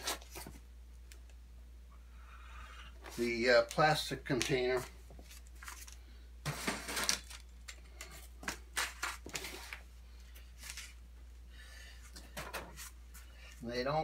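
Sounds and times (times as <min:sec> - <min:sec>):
plastic bags crinkling: 0:05.2 - 0:07.7.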